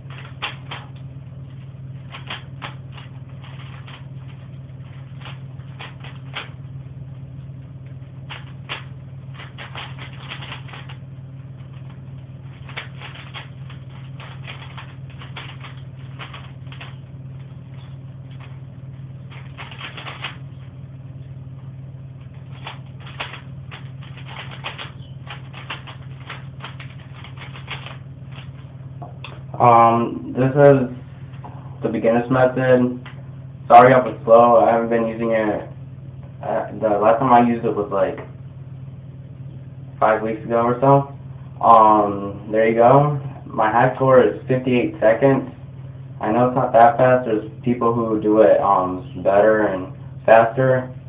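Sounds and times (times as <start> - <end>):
low background hum: 0.0 - 51.0
puzzle cube plastic clicks: 22.5 - 28.5.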